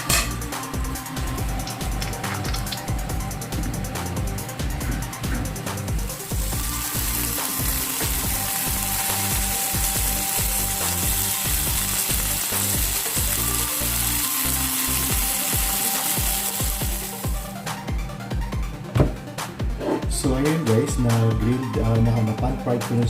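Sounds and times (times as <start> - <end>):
background music with a beat: 0.0 - 23.0
chicken sizzling in hot oil: 6.1 - 17.6.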